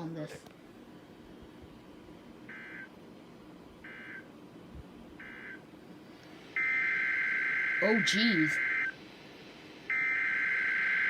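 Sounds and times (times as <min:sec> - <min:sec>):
faint beeping data bursts: 0:02.5 - 0:02.9, 0:03.8 - 0:04.3, 0:05.2 - 0:05.6, 0:06.6 - 0:09.0, 0:09.9 - 0:11.0
loud steady alarm tone: 0:02.5 - 0:02.9, 0:03.8 - 0:04.3, 0:05.2 - 0:05.6, 0:06.4 - 0:09.0, 0:09.8 - 0:11.0.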